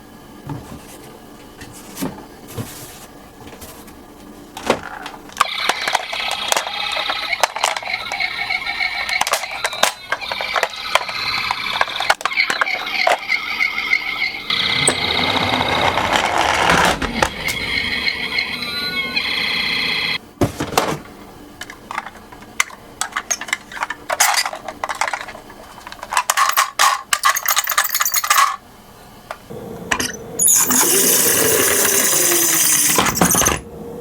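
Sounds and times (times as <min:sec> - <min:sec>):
toy cars knocking: 0:05.4 - 0:13.2.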